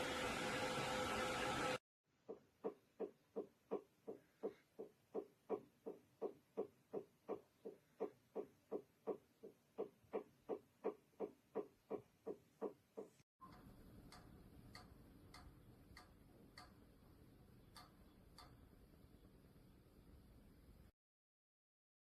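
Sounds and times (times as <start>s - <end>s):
steady hiss: 0.0s - 1.8s
evenly spaced sharp clicks: 2.2s - 19.6s.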